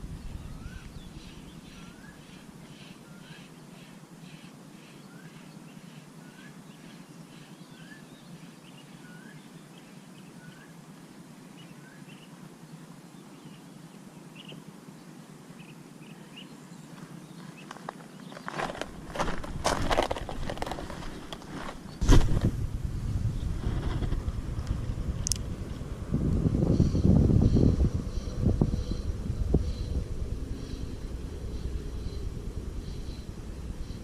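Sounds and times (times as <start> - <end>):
low outdoor rumble: 0.0 - 3.2, 14.7 - 34.0.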